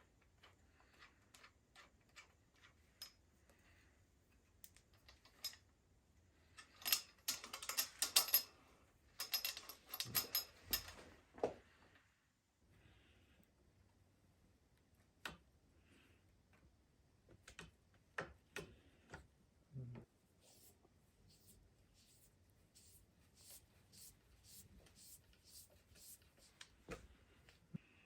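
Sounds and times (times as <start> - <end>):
tools clicking and knocking: 6.6 - 8.5, 9.2 - 11.0.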